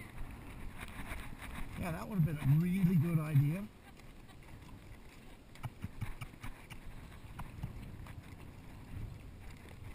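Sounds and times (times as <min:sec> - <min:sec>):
horse hooves clopping: 0:00.0 - 0:09.9.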